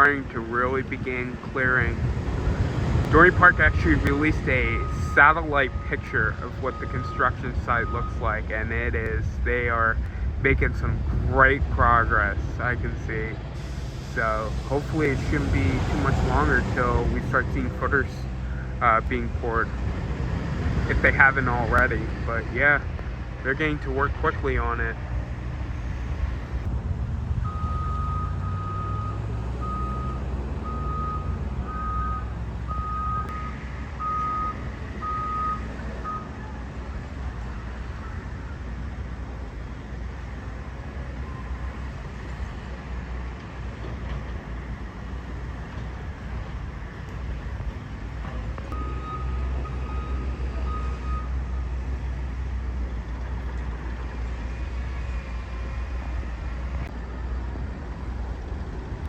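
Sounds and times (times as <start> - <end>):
low rumble of diesel engines: 0.0 - 59.0
reversing alarm beeping: 3.2 - 8.4, 27.4 - 36.6, 48.7 - 51.7.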